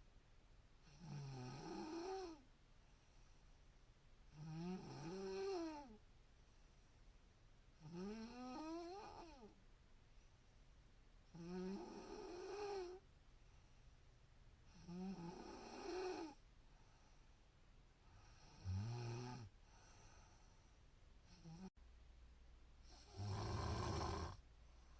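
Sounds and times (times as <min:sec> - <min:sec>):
woman snoring: 0:00.8 - 0:02.4, 0:04.3 - 0:06.0, 0:07.8 - 0:09.5, 0:11.3 - 0:13.0, 0:14.7 - 0:16.4, 0:18.2 - 0:19.5, 0:21.3 - 0:21.7, 0:22.9 - 0:24.4.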